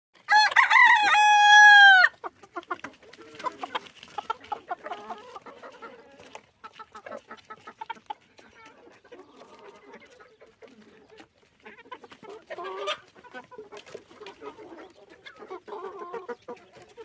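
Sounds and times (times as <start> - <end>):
chickens clucking: 0.2 - 17.0
rooster crowing: 0.3 - 2.1.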